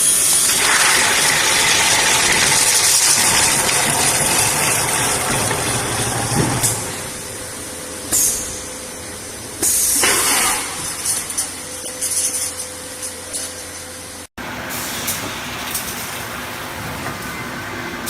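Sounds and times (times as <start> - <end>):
forming machine humming: 0.0 - 10.1.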